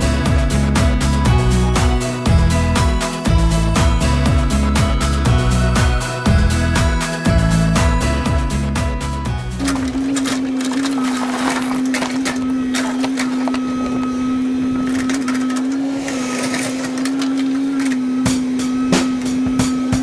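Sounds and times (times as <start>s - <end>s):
excavator engine and hydraulics: 0.0s - 20.0s
knocks and clatter: 9.6s - 14.2s.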